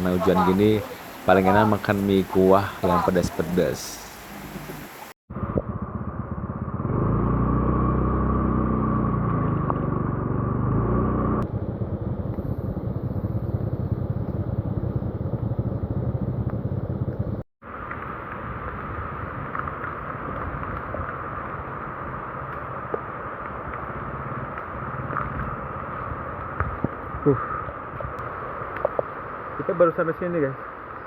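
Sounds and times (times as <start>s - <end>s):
road and wind noise: 0.0s - 31.0s
vehicle engine running: 4.4s - 17.4s.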